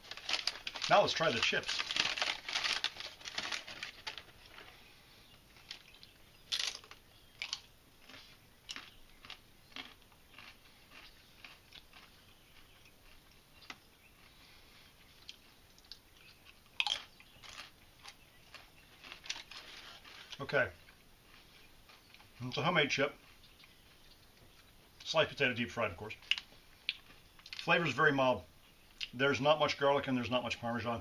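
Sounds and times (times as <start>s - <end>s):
crunching potato chips: 0.0s - 25.1s, 26.1s - 27.9s.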